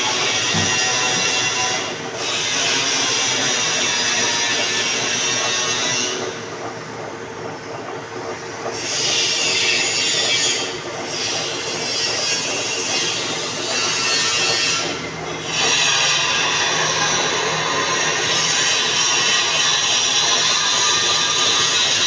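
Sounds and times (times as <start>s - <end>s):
cutting tool scraping metal: 0.0s - 6.3s, 8.7s - 22.0s
lathe motor hum: 0.0s - 22.0s.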